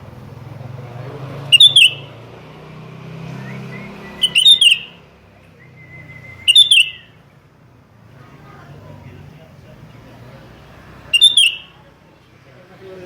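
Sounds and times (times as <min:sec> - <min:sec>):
bird chirping calls: 0:01.4 - 0:02.2, 0:03.2 - 0:07.5, 0:11.1 - 0:11.8
thin bird whistle: 0:01.5 - 0:02.2, 0:03.3 - 0:07.2, 0:11.1 - 0:11.8.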